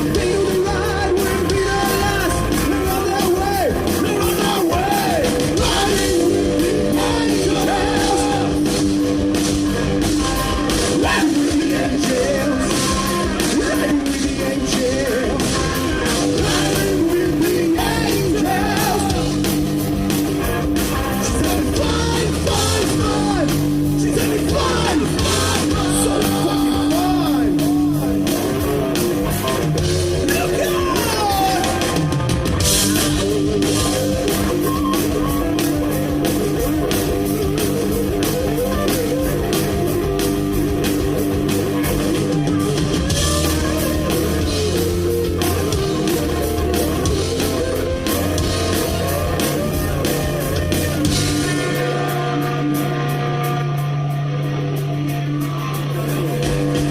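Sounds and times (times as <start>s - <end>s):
person singing: 0.0s - 8.7s, 10.9s - 19.4s, 21.0s - 29.0s, 30.2s - 32.1s
drum kit: 0.0s - 56.9s
electric guitars: 0.0s - 56.9s.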